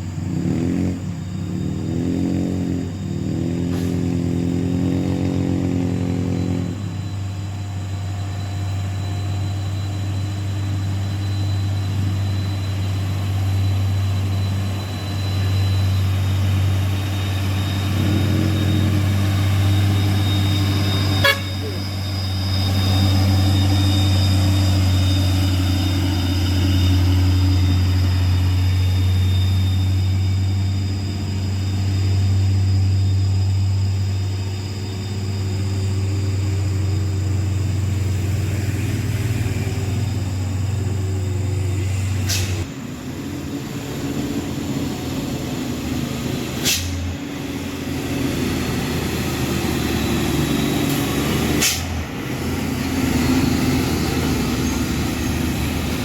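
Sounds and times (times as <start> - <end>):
diesel truck engine labouring: 0.0 - 56.0.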